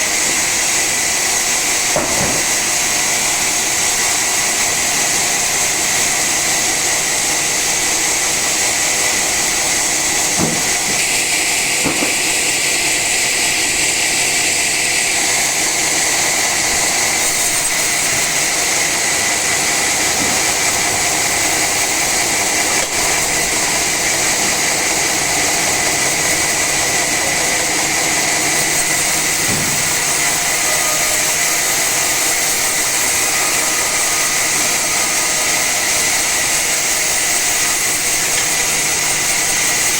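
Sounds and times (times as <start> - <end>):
saw cutting through log: 0.0 - 39.9.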